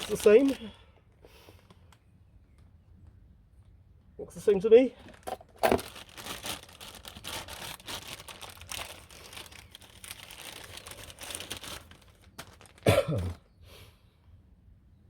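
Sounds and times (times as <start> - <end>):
packaging crinkling and rustling: 0.0 - 0.7, 5.0 - 13.4.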